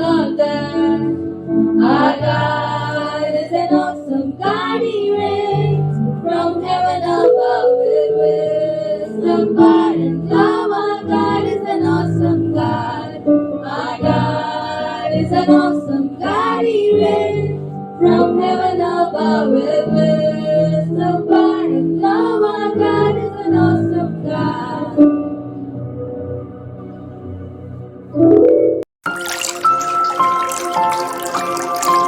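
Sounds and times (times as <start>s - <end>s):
choir singing: 0.0s - 25.2s.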